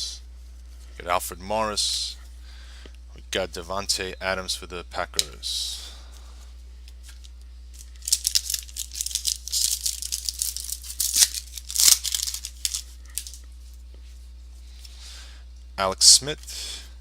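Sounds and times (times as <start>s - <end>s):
trading cards rustling and clicking: 6.9s - 13.4s.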